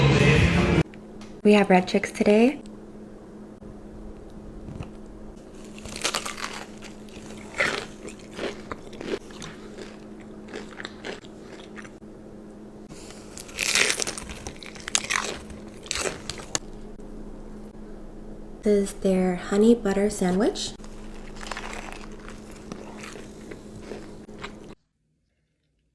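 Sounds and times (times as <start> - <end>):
faint steady hum: 0.2 - 24.8
crunchy food bites and chewing: 4.6 - 12.0, 12.9 - 17.0, 20.8 - 24.8.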